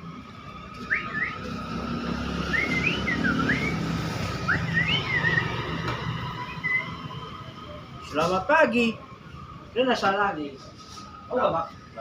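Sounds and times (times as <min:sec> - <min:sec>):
myna whistling: 0:00.8 - 0:01.5, 0:02.4 - 0:05.7, 0:06.4 - 0:07.0.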